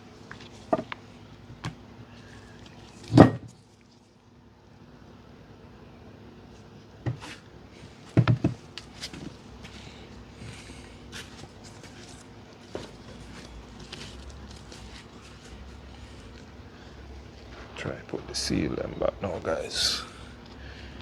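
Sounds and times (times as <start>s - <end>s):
knocks from tools being handled: 8.2s - 9.3s.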